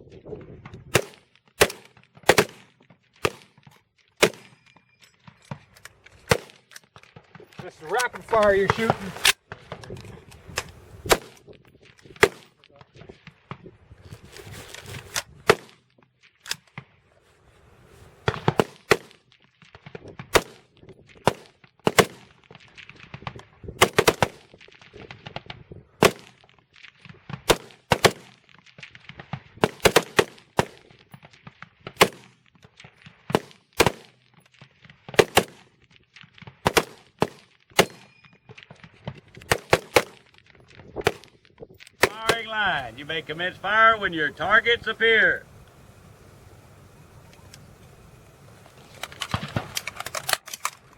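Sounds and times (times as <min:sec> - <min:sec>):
rifle shots: 0:00.9 - 0:03.6, 0:04.2 - 0:04.6, 0:05.6 - 0:09.5, 0:10.6 - 0:12.6, 0:20.3 - 0:20.6, 0:21.2 - 0:22.3, 0:23.8 - 0:24.6, 0:26.0 - 0:26.4, 0:27.4 - 0:28.4, 0:29.6 - 0:30.9, 0:32.0 - 0:32.4, 0:33.2 - 0:34.2, 0:35.1 - 0:35.7, 0:36.6 - 0:38.2, 0:39.4 - 0:40.3, 0:41.0 - 0:41.3, 0:41.9 - 0:50.9.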